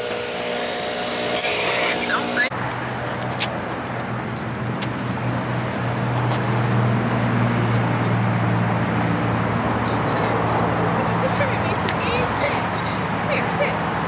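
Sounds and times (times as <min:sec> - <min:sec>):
road noise: 0:00.0 - 0:14.0
vehicle engine hum: 0:00.0 - 0:14.0.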